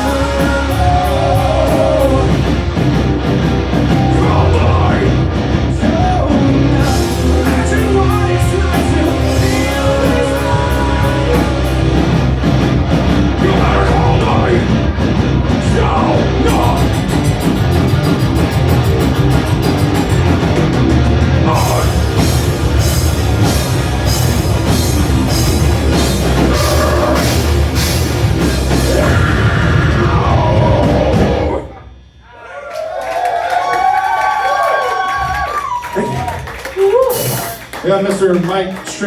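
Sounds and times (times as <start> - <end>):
drum kit cymbal beat: 0.0 - 31.6, 36.8 - 37.8
electric guitars: 0.0 - 31.7
rock band playing live: 0.0 - 32.1, 35.1 - 39.0.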